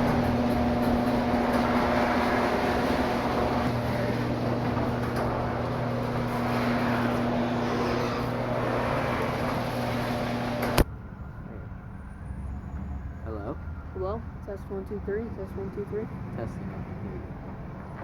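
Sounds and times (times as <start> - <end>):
low mechanical hum: 0.0 - 10.9.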